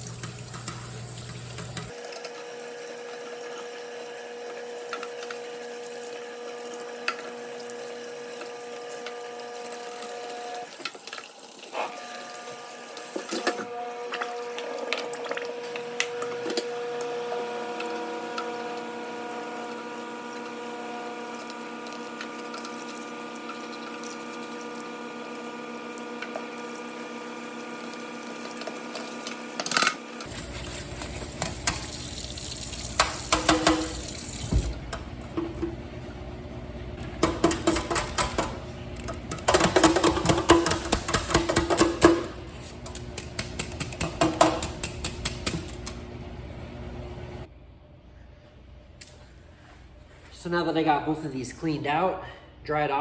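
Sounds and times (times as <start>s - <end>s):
tap water running over filter: 0.0s - 3.8s, 4.4s - 16.6s, 21.3s - 29.4s, 30.2s - 35.8s.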